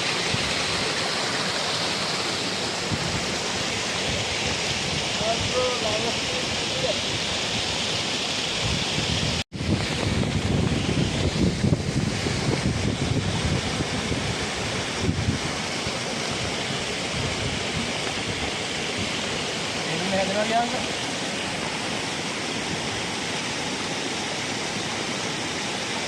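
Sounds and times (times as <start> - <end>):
waterfall rushing: 0.0 - 26.0
wind buffeting microphone: 8.6 - 19.5.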